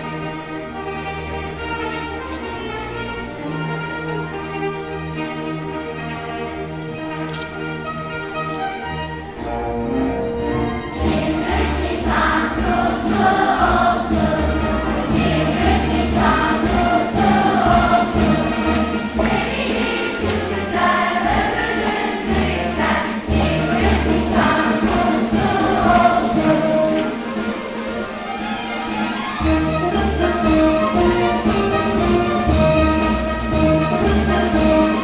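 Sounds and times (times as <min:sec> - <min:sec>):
children's choir singing: 0:00.0 - 0:07.0, 0:08.9 - 0:35.0
orchestral accompaniment: 0:00.0 - 0:35.0.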